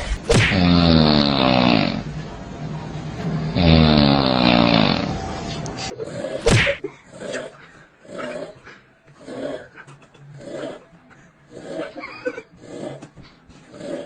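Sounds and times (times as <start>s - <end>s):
person snoring: 0.0s - 8.6s, 13.7s - 14.0s.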